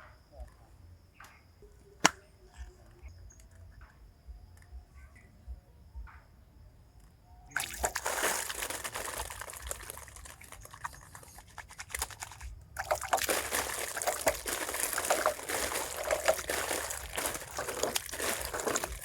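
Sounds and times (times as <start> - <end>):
water pouring and trickling: 7.5 - 19.0.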